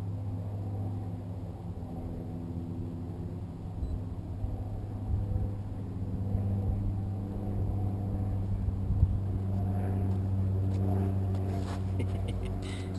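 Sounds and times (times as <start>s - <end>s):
quadcopter motors humming: 0.0s - 12.9s.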